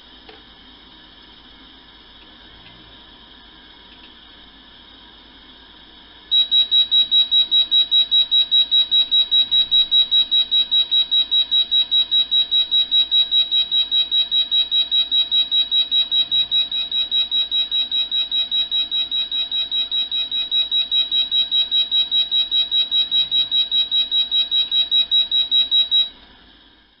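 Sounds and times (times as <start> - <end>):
fire alarm beeping: 6.3 - 26.1.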